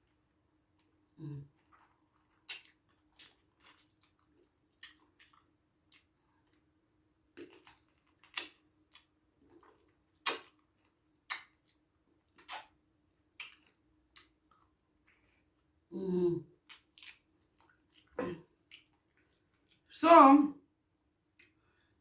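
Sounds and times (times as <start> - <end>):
wet mouth smacks while eating: 2.5 - 6.1, 7.4 - 10.6, 11.3 - 11.8, 12.4 - 12.8, 13.4 - 15.2.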